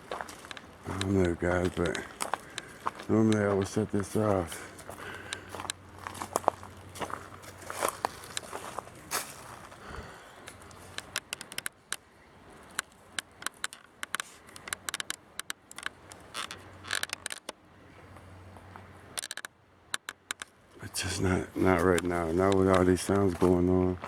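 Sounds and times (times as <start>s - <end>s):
footsteps crunching on dry leaves: 0.0s - 11.0s.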